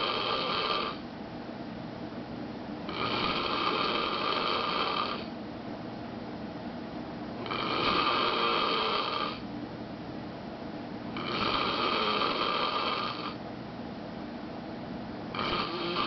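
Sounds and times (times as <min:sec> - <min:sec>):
man snoring loudly: 0:00.0 - 0:01.0, 0:02.9 - 0:05.3, 0:07.4 - 0:09.4, 0:11.2 - 0:13.4, 0:15.3 - 0:16.0.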